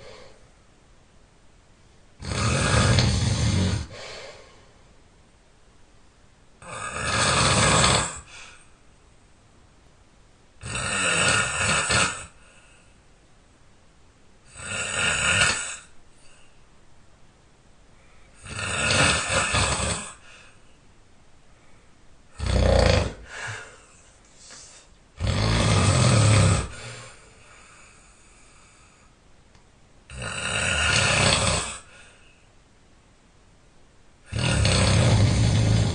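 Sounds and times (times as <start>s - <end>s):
person snoring loudly: 2.2s - 4.2s, 6.6s - 8.5s, 10.6s - 12.4s, 14.5s - 15.9s, 18.4s - 20.3s, 22.3s - 23.8s, 25.2s - 27.2s, 30.1s - 32.0s, 34.3s - 35.9s.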